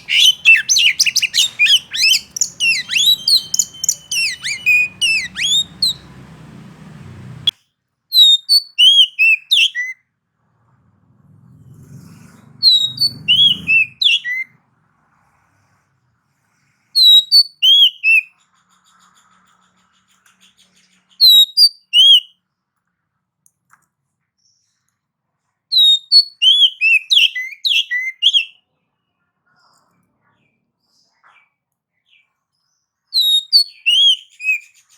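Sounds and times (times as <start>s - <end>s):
songbird whistling song: 0.0s - 7.5s, 8.1s - 10.0s, 12.6s - 14.5s, 17.0s - 22.3s, 25.7s - 28.6s, 33.1s - 34.9s.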